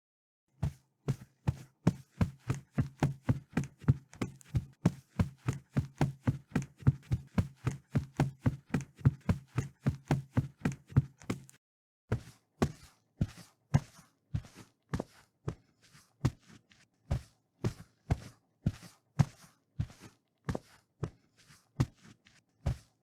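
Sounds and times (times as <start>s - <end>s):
quick footsteps: 1.1s - 11.6s.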